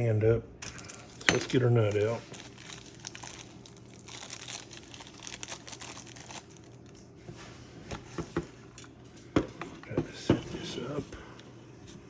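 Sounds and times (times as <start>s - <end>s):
plastic packaging crinkling: 0.6s - 7.0s.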